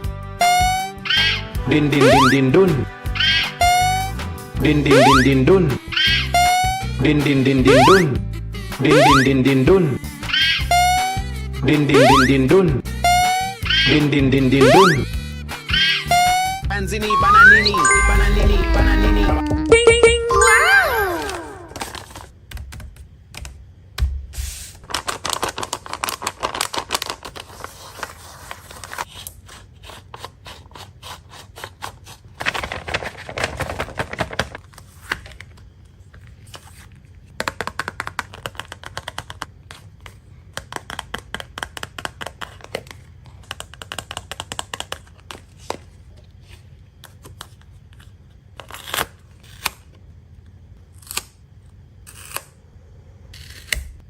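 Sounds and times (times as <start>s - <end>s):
paper rustling and crinkling: 21.2s - 22.4s, 24.5s - 49.6s.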